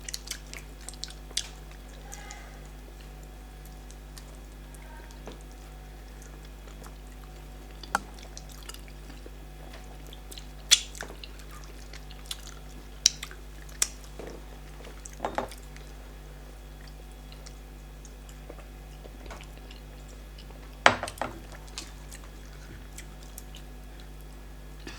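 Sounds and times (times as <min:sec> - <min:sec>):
wet eating smacks and squelches: 0:00.0 - 0:16.0, 0:21.4 - 0:24.4
steady low hum: 0:00.0 - 0:24.9.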